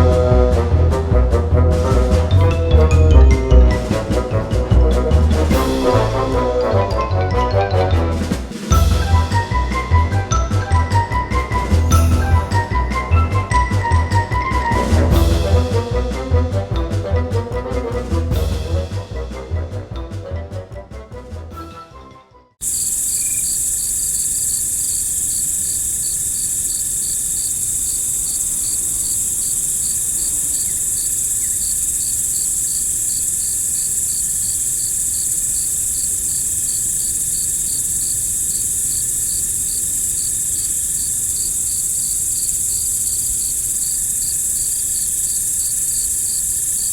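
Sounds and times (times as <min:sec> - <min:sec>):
background music: 0:00.0 - 0:22.6
crickets trilling: 0:22.6 - 0:46.9.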